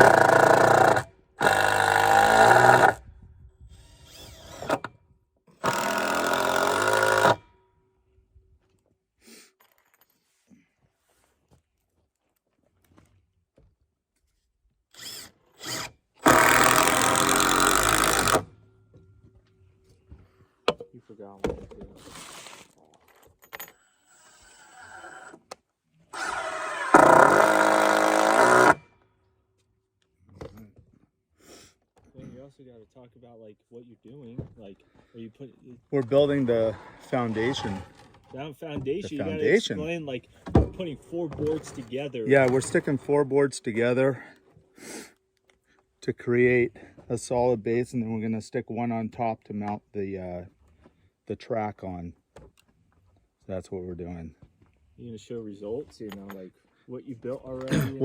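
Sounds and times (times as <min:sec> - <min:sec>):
power drill driving screws: 0:00.0 - 0:03.0, 0:03.7 - 0:07.5, 0:14.9 - 0:18.5, 0:24.0 - 0:25.4, 0:26.1 - 0:28.8.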